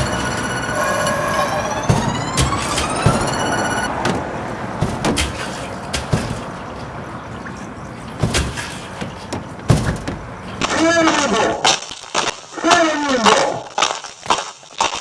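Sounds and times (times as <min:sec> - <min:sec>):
knocks and clicks: 0:01.6 - 0:06.5, 0:08.2 - 0:11.6.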